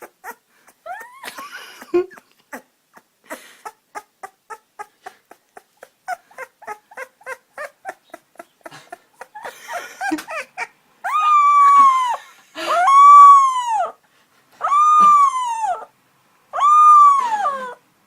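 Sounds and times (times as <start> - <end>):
puppy howling: 0.0 - 1.4, 10.3 - 14.0, 14.6 - 15.9, 16.6 - 17.8
puppy yipping: 0.0 - 1.4, 2.1 - 14.0, 14.6 - 15.9, 16.6 - 17.8.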